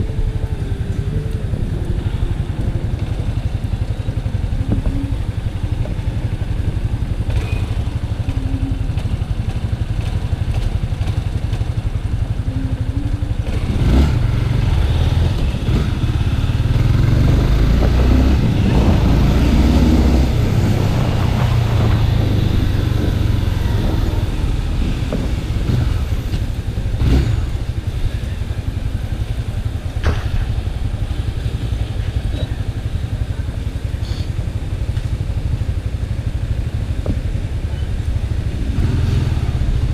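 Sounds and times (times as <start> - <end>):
motorcycle engine rumble: 0.0 - 39.9.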